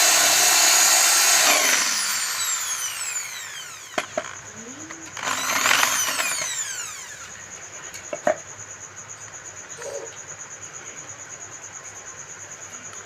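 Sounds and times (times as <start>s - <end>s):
electric drill whirring: 0.0s - 4.4s, 5.1s - 7.3s
pulsing insect trill: 0.1s - 12.9s.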